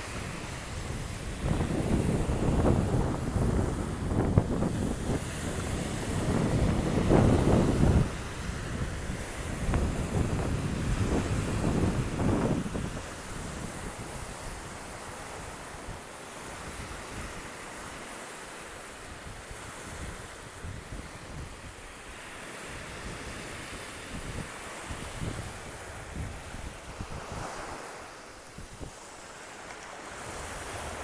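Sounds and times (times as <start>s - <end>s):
wind buffeting microphone: 0.0s - 17.5s, 22.7s - 29.0s
surf on a beach: 0.0s - 31.0s.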